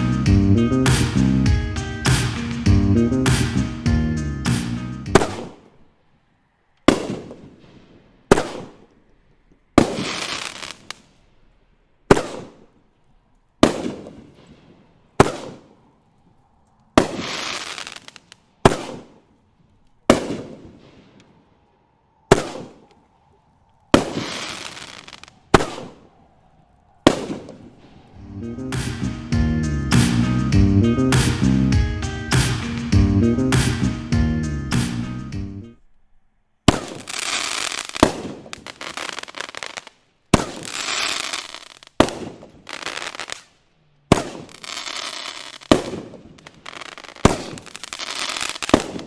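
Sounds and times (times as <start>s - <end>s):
fireworks bangs: 0.9s - 3.8s, 4.5s - 5.8s, 6.9s - 9.0s, 9.8s - 11.1s, 12.1s - 12.8s, 13.6s - 15.8s, 17.0s - 19.3s, 20.0s - 21.5s, 22.3s - 23.0s, 23.9s - 26.3s, 27.0s - 28.2s, 28.8s - 30.3s, 31.1s - 34.0s, 36.7s - 43.5s, 44.1s - 49.0s.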